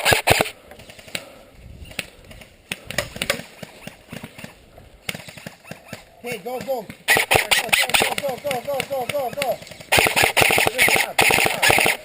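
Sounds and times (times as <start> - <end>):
airsoft gunfire cracks: 6.8 - 12.0.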